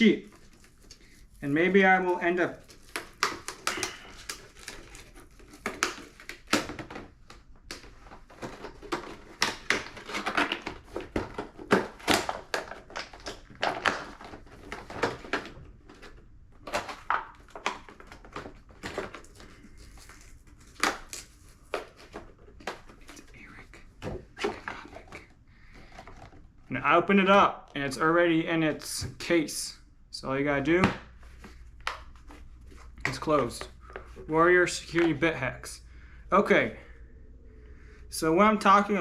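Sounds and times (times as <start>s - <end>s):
plastic packaging crackling: 0.2s - 23.6s.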